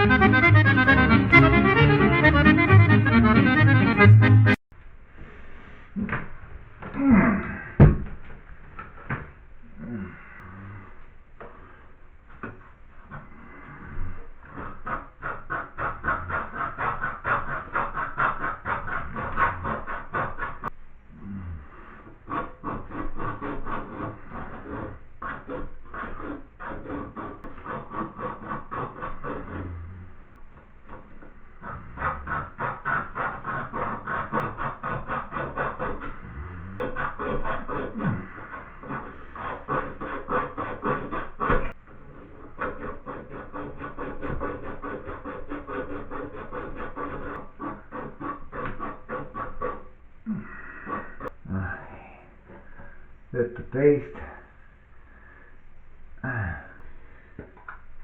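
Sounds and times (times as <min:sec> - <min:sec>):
rhythmic hand rubbing: 0:00.0 - 0:04.6, 0:11.4 - 0:51.4.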